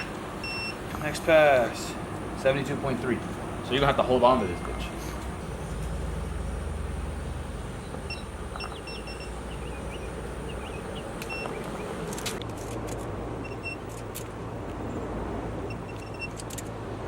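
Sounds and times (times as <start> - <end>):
torque wrench beeping: 0.0 - 1.1, 7.6 - 12.3, 15.7 - 16.5.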